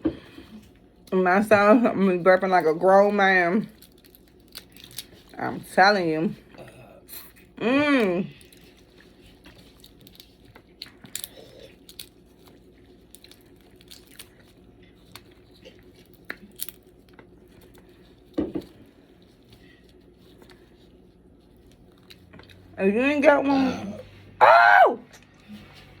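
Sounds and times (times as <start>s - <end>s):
crab shells cracking: 3.7s - 5.4s, 9.5s - 18.3s
chewing: 8.3s - 22.8s.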